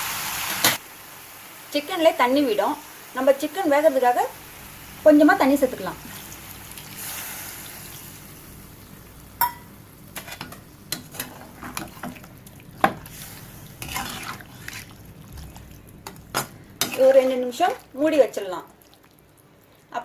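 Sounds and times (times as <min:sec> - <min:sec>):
water hissing in hot pan: 0:00.0 - 0:09.3, 0:10.8 - 0:15.2
spoon scraping and clinking pan: 0:09.4 - 0:12.2.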